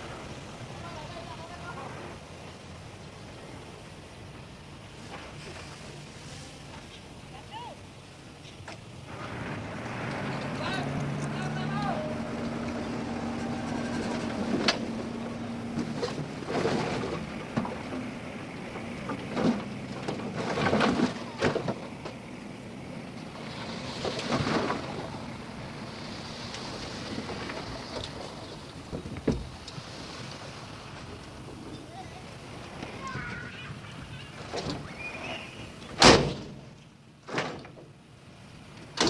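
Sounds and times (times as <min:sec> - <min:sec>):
diesel engine hum: 0:05.8 - 0:35.8
knocks and clanks: 0:09.1 - 0:22.5.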